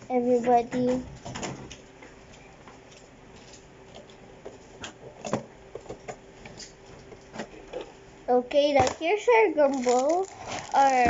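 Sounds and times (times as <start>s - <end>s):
faint steady hum: 0.0s - 11.0s
plastic toy pieces clicking: 9.7s - 11.0s.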